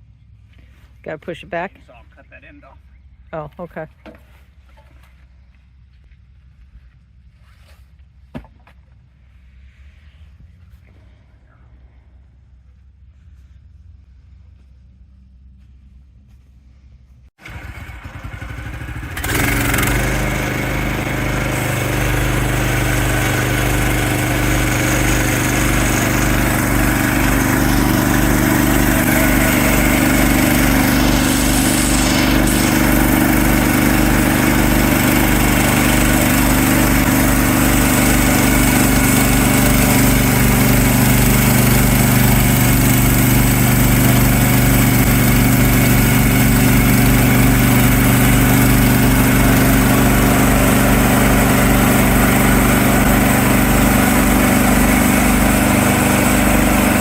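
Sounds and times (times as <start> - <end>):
small gas engine running: 17.4 - 57.0.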